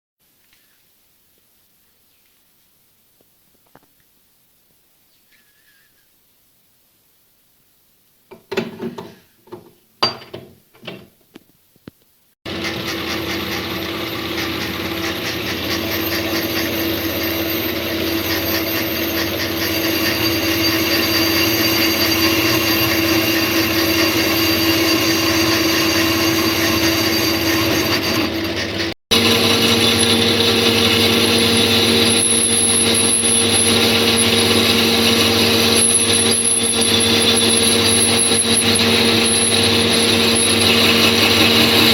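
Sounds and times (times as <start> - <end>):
machine tool motor humming and cutting: 12.5 - 41.9.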